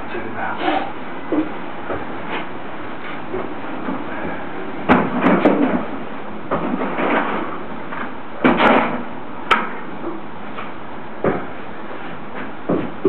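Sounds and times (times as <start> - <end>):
steady background hiss: 0.0 - 13.0
sharp knocks and clunks: 4.8 - 5.9, 8.4 - 10.2, 11.2 - 11.6, 12.4 - 13.0.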